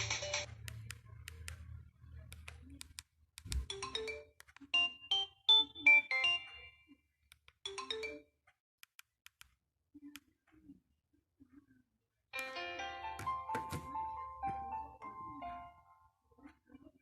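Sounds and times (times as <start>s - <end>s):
phone ringtone melody: 0.0s - 0.5s, 3.7s - 6.8s, 7.7s - 8.3s, 12.4s - 15.8s.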